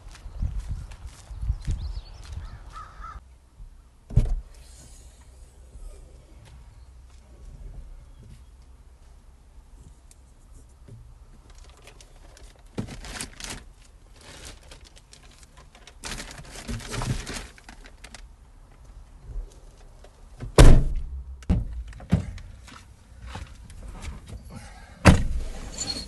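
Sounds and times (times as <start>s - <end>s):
knocks and thuds: 4.1s - 4.5s, 20.4s - 22.4s, 25.0s - 25.4s
rustling and handling noise: 6.4s - 20.5s, 21.6s - 24.5s.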